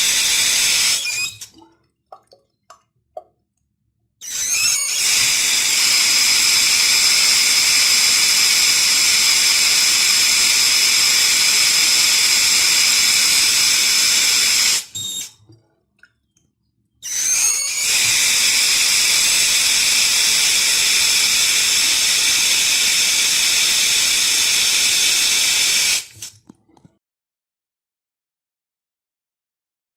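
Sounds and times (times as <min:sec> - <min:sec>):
water tap running: 0:04.3 - 0:15.3, 0:17.1 - 0:26.5.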